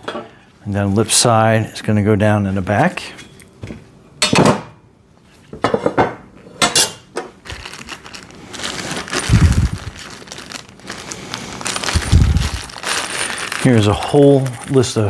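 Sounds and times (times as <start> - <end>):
steel parts clinking: 11.6 - 15.0.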